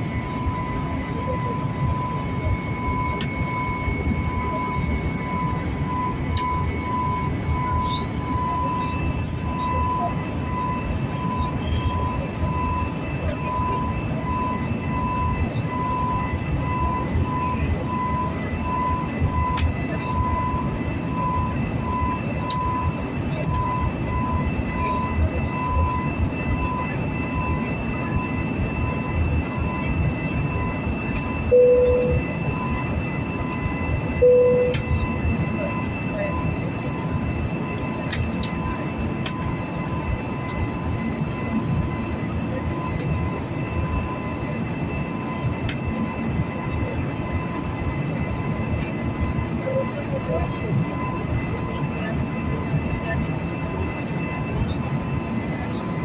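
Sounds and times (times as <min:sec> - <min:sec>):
faint high whine: 0:00.0 - 0:56.0
jet engine rumble: 0:00.0 - 0:56.0
faint high tones: 0:31.4 - 0:37.1.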